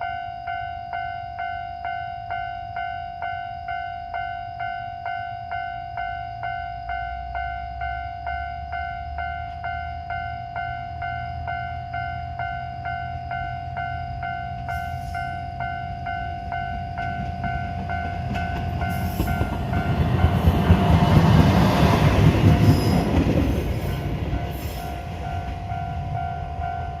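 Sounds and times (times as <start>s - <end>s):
level-crossing bell ringing: 0.0s - 20.8s, 23.7s - 27.0s
train rumble: 11.0s - 27.0s.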